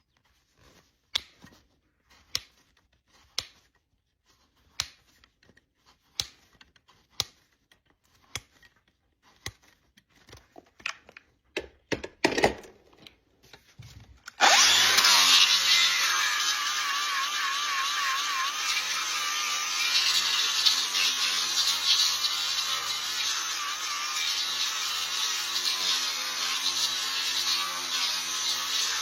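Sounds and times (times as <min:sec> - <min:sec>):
handheld power tool running: 0:14.3 - 0:29.0.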